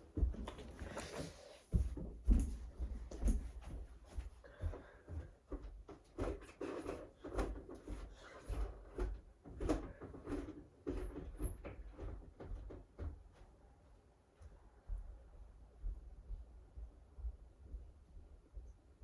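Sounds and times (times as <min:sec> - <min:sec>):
footsteps: 0:00.0 - 0:13.5.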